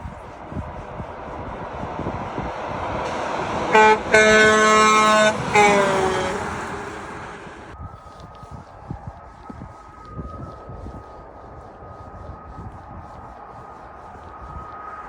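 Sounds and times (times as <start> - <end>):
truck road noise: 0.0 - 7.8
truck horn blasts: 2.9 - 7.8.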